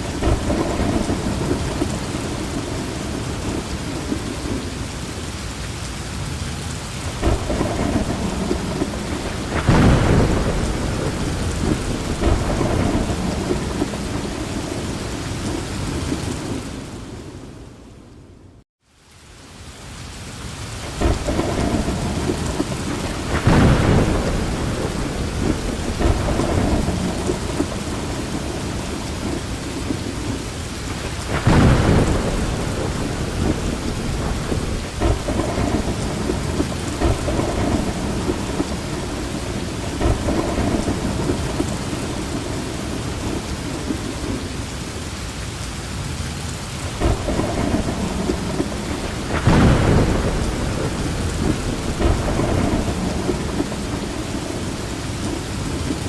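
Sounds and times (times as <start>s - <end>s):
thunder rolling: 0.0s - 4.8s, 7.1s - 17.7s, 20.9s - 44.5s, 46.9s - 56.0s
heavy rain: 0.0s - 56.0s.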